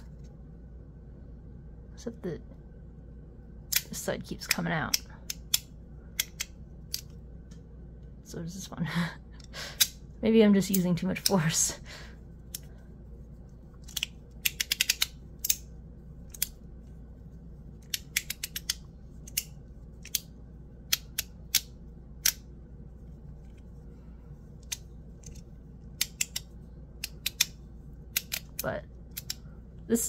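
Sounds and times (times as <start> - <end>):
fidget slider metallic clicks: 13.8 - 15.7, 17.8 - 20.3, 24.6 - 29.4.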